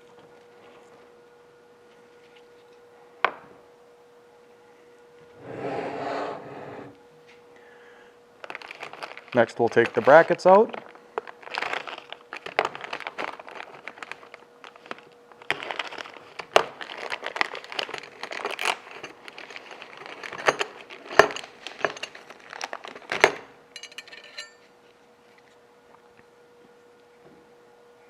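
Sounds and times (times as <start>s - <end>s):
faint steady hum: 0.0s - 28.0s
metal parts rustling and clicking: 8.4s - 24.7s
ringing metal clatter: 23.8s - 24.7s.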